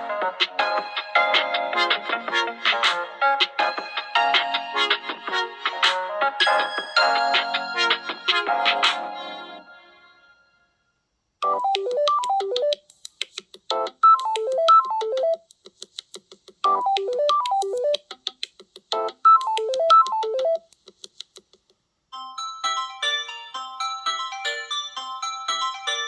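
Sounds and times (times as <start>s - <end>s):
phone ringtone: 6.4s - 9.6s, 11.4s - 12.8s, 22.1s - 26.0s
faint rapid ticks: 11.6s - 21.8s.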